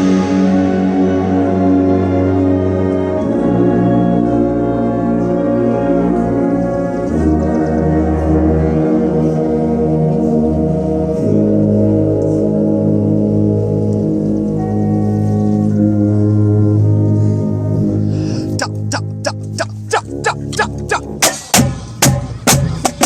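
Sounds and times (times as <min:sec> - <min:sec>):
brass playing sustained chords: 0:00.0 - 0:21.9.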